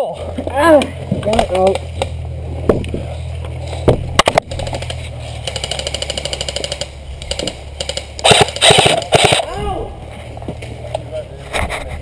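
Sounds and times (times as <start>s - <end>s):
airsoft guns firing: 5.4s - 9.7s.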